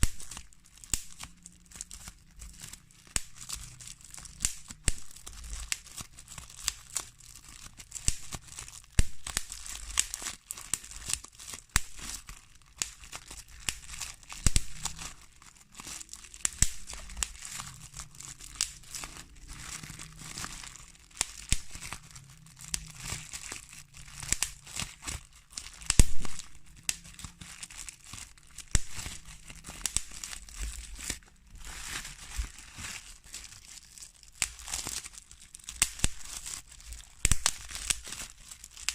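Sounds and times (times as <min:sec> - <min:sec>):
bubble wrap popping: 0:00.0 - 0:38.9
plastic sheet crinkling: 0:00.0 - 0:38.9.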